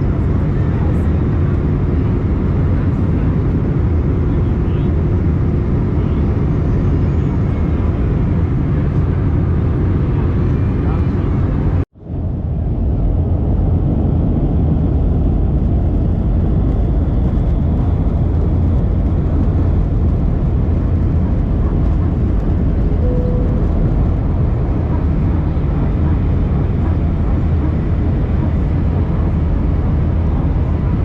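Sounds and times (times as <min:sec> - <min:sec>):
jet engine cabin drone: 0:00.0 - 0:31.0
faint tone: 0:23.0 - 0:24.3.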